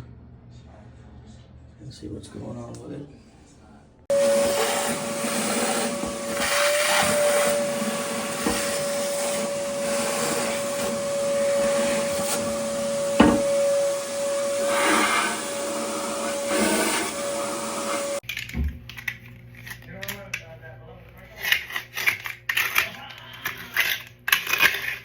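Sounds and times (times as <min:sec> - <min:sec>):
electric motor whining: 0:04.1 - 0:18.2
rushing hiss: 0:04.1 - 0:18.2.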